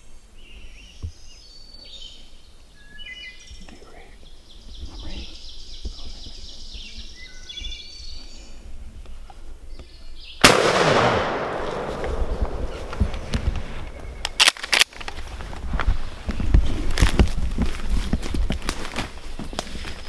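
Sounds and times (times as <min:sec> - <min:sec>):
songbirds chirping: 0:00.0 - 0:20.0
shotgun blast echoing: 0:10.4 - 0:15.4.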